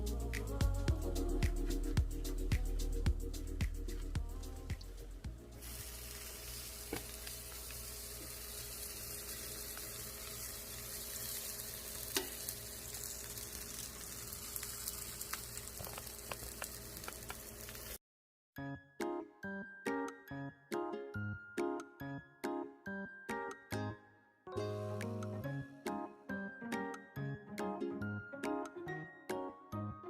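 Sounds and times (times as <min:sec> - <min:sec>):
food sizzling in a pan: 0:05.6 - 0:18.0.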